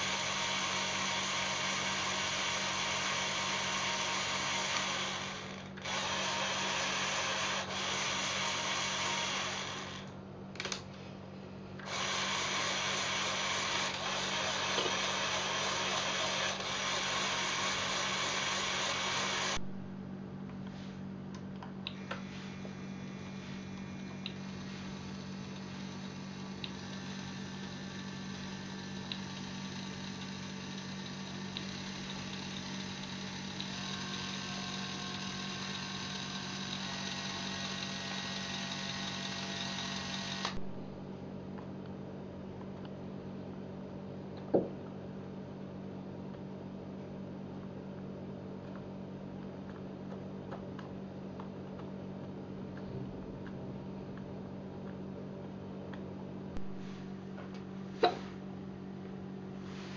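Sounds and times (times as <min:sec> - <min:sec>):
toy truck motors whirring: 0:00.0 - 0:10.1, 0:11.8 - 0:19.6, 0:22.9 - 0:40.6.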